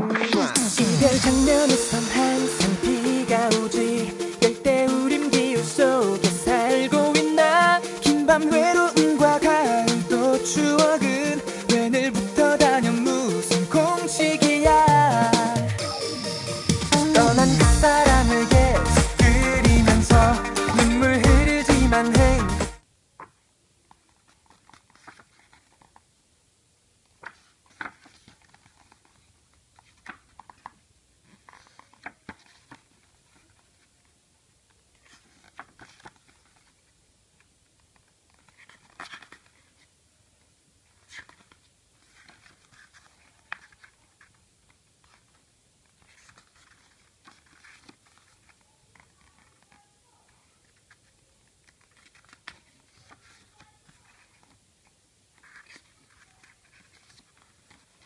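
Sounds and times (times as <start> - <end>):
cd packaging being handled: 50.6 - 54.7.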